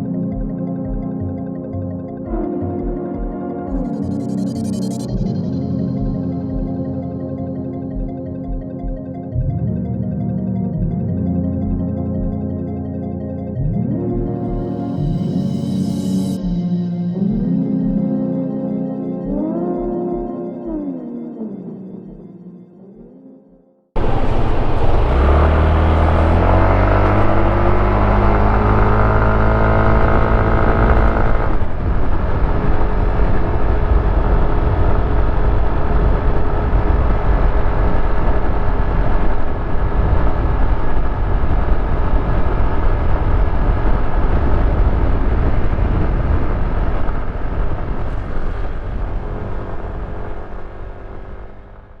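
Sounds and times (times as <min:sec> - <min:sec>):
scooter engine revving: 0:24.0 - 0:31.8.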